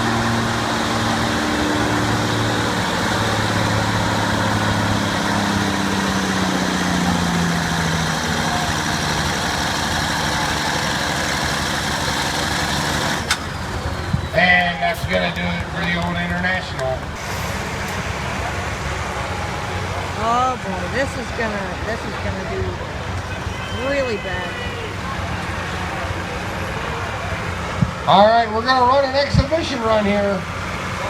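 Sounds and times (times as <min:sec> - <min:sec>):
truck engine working under load: 0:00.0 - 0:31.0.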